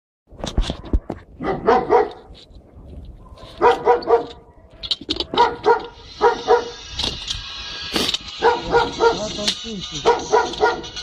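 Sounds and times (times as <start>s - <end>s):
dog barking: 1.4s - 2.3s, 3.2s - 6.8s, 8.4s - 9.4s, 10.0s - 11.0s.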